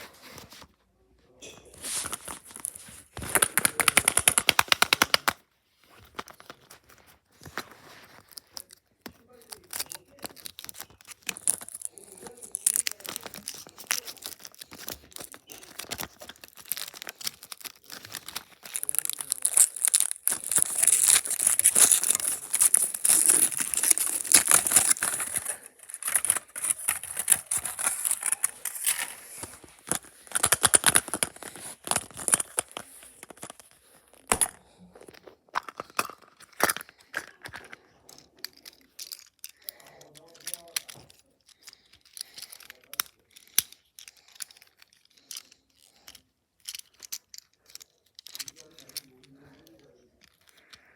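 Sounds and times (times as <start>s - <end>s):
wrapper tearing and crinkling: 1.7s - 5.4s, 8.0s - 37.8s.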